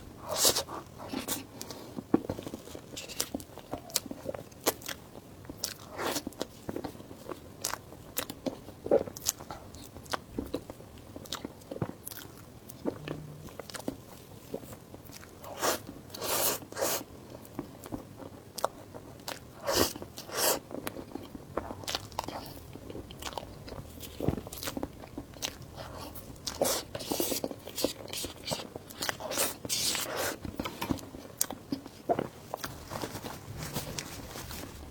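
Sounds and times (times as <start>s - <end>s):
person chewing crunchy food: 0.2s - 32.7s.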